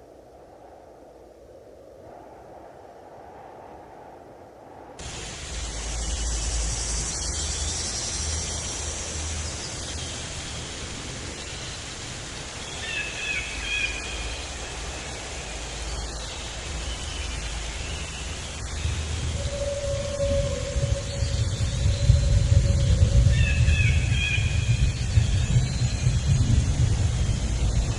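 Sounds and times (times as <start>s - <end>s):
even hiss: 0.0s - 27.9s
low rumble: 13.5s - 27.9s.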